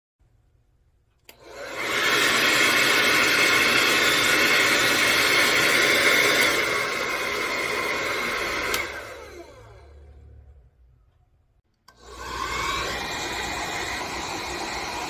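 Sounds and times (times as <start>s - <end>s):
hair dryer blowing air: 1.3s - 10.3s, 11.9s - 15.0s
hair dryer switch click: 8.5s - 9.1s.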